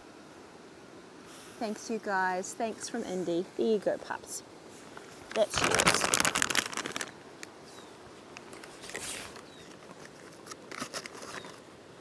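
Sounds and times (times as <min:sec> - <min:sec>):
dog crunching a treat: 0:05.3 - 0:07.2.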